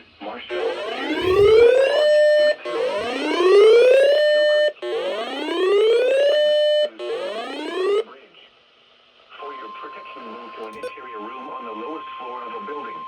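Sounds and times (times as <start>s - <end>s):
electronic whooping alarm: 0.5s - 8.0s.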